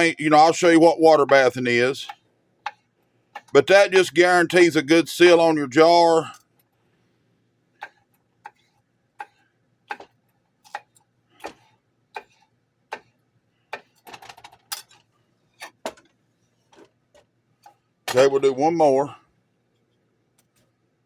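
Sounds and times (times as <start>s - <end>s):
knife chopping vegetables on board: 9.2s - 13.1s, 13.7s - 14.0s.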